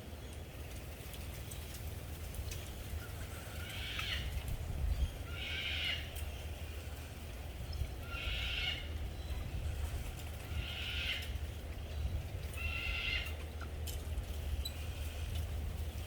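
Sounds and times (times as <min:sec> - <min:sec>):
steady low rumble: 0:06.0 - 0:16.0.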